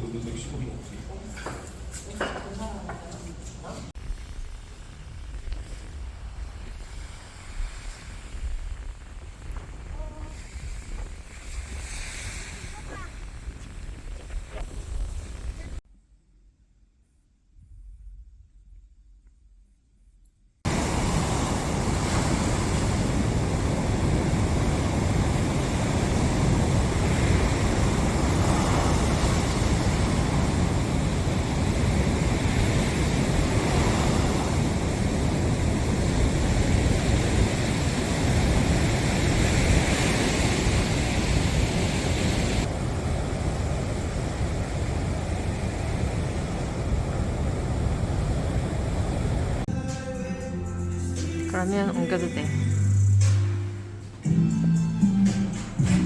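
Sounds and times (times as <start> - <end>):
wind rumble on microphone: 4.0 - 15.8, 20.7 - 49.6
sea waves breaking on beach: 9.8 - 13.6, 20.7 - 49.6.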